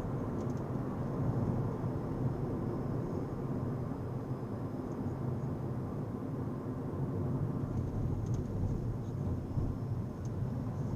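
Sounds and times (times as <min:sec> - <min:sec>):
car rumbling in motion: 0:07.2 - 0:10.9.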